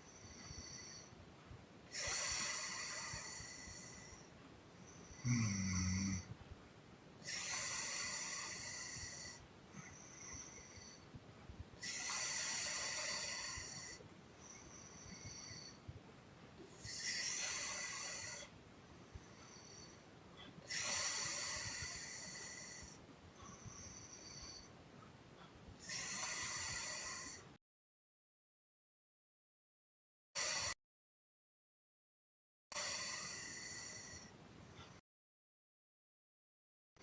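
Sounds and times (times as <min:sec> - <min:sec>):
woman snoring and puffing: 0:00.0 - 0:01.1, 0:01.9 - 0:04.3, 0:05.0 - 0:06.3, 0:07.2 - 0:11.1, 0:11.8 - 0:15.9, 0:16.6 - 0:18.5, 0:20.6 - 0:24.7, 0:25.8 - 0:27.5, 0:30.4 - 0:30.8, 0:32.7 - 0:35.0.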